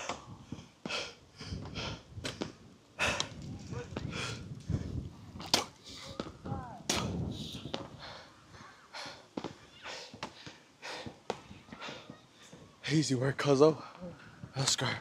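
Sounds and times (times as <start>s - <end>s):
person breathing hard: 0.0s - 2.1s, 3.0s - 5.0s, 7.3s - 12.2s.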